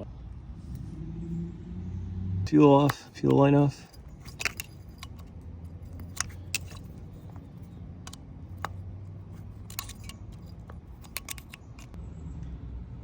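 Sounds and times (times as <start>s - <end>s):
low steady hum: 0.0s - 13.0s
metallic clicks of hand tools: 2.8s - 12.0s.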